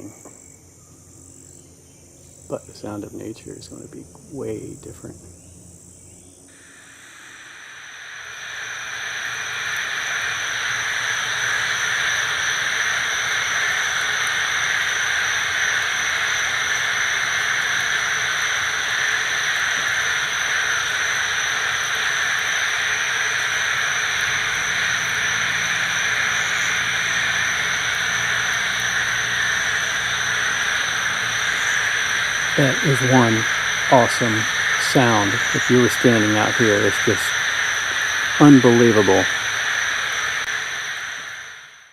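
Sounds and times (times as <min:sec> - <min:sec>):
chorus of frogs calling: 0:06.5 - 0:41.9
steady high-pitched tone: 0:28.9 - 0:39.6.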